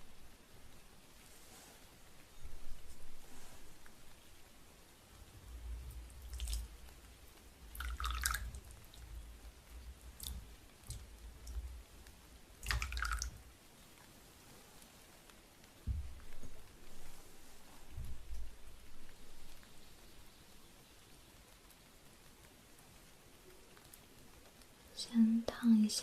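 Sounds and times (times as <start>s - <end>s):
water dripping: 0.0s - 14.3s, 15.2s - 26.0s
soft knocks of handling: 15.8s - 17.2s.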